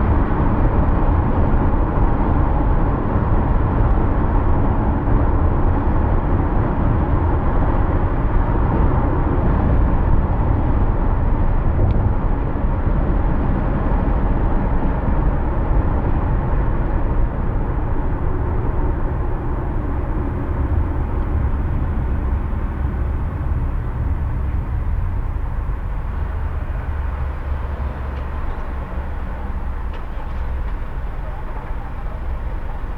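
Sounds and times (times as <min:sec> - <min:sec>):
car road noise: 0:17.5 - 0:32.9.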